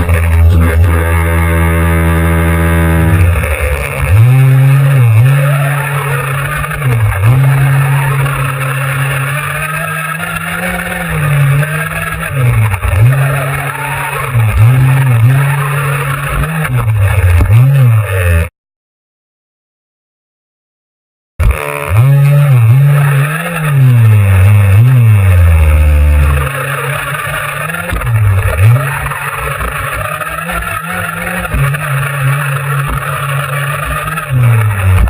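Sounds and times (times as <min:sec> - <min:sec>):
toy car motor revving: 0:00.0 - 0:18.5, 0:21.4 - 0:35.0.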